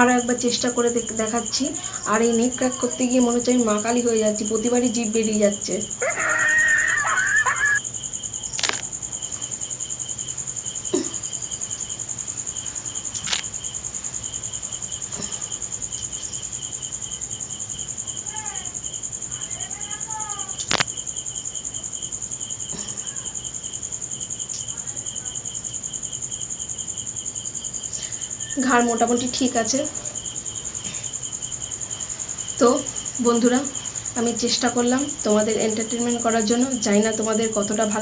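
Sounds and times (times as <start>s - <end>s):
crickets chirping: 0.0s - 38.0s
sharp clicks: 8.6s - 8.9s, 13.2s - 13.5s, 20.6s - 20.9s.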